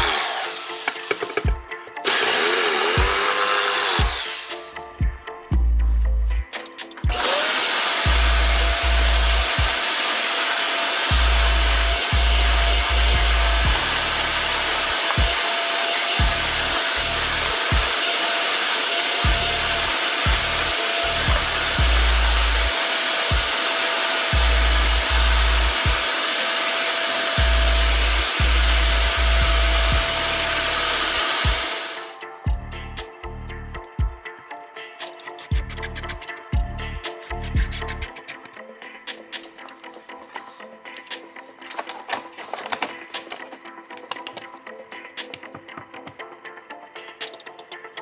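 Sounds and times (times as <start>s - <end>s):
power saw cutting wood: 0.0s - 4.8s, 7.1s - 32.2s
background music: 0.0s - 48.0s.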